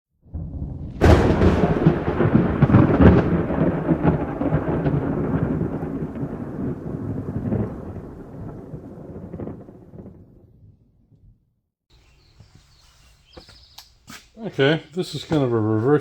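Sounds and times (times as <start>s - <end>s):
rolling thunder rumble: 0.2s - 11.5s
thunderclap: 0.2s - 11.5s.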